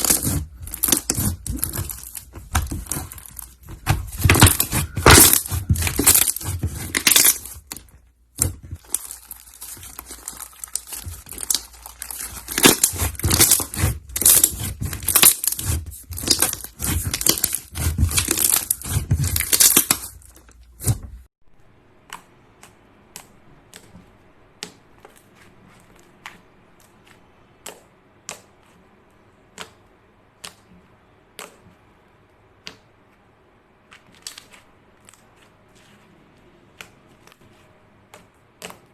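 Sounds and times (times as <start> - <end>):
slime crackling and popping: 0.0 - 21.0.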